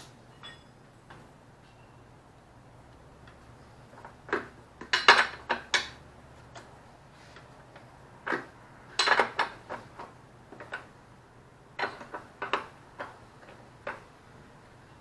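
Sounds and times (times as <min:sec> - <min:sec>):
metal tools clicking and clinking: 0:00.3 - 0:00.8, 0:08.3 - 0:09.6.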